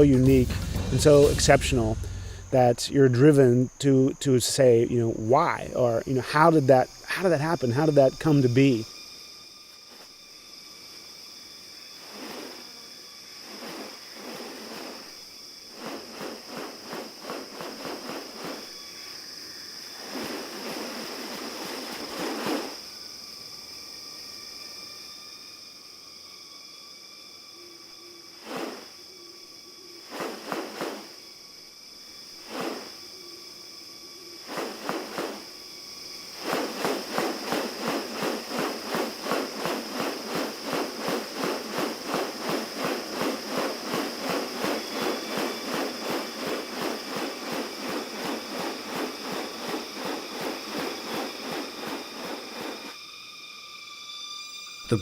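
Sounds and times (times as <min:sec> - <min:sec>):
regular pulses: 0:00.0 - 0:08.7
insects shrilling: 0:00.0 - 0:55.0.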